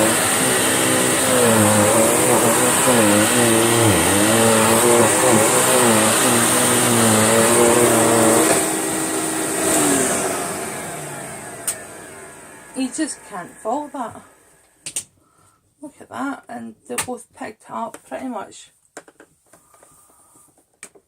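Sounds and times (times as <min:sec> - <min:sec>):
vacuum cleaner running: 0:00.0 - 0:14.7
click: 0:11.6 - 0:11.8.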